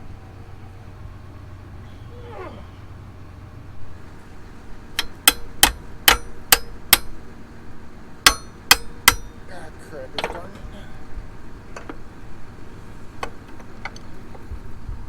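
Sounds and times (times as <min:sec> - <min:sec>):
ringing metal-on-metal clangs: 0:05.0 - 0:07.2, 0:08.2 - 0:09.5.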